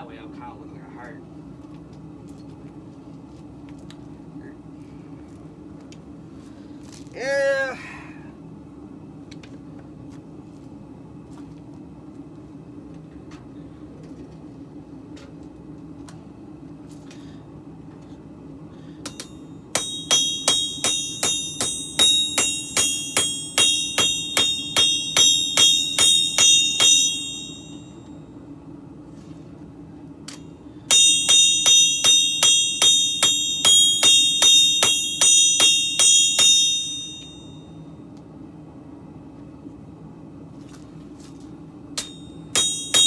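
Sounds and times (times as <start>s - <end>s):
steady low hum: 0.0s - 43.0s
hammer striking steel on anvil: 19.0s - 28.0s, 30.3s - 37.7s, 42.0s - 43.0s.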